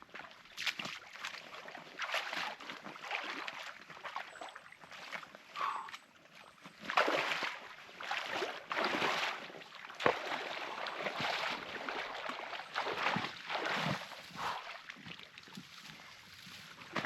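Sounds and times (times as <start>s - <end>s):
water sloshing and splashing: 0.0s - 17.0s.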